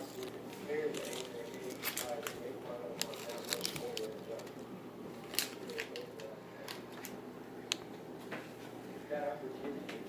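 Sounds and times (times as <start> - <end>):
sharp clicks and crinkles: 0.0 - 4.6, 5.2 - 7.9
faint talking: 0.0 - 7.0.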